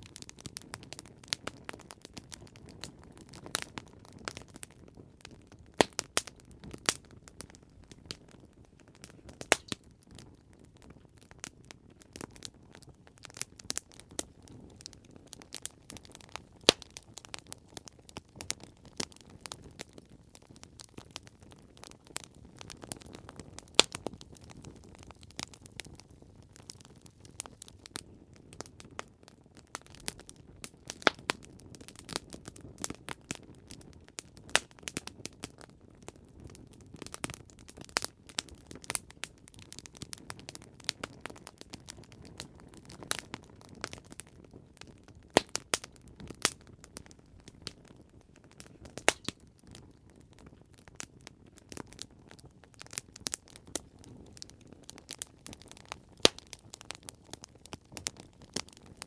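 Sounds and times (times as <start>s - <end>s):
campfire wood crackling: 0.0s - 59.0s.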